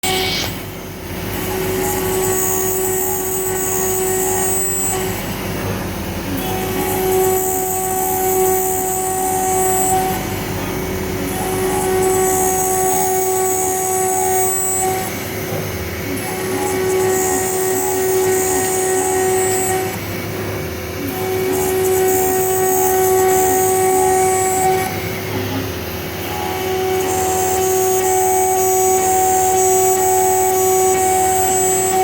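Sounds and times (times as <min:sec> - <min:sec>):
cnc spindle milling aluminium: 0:00.0 - 0:32.0.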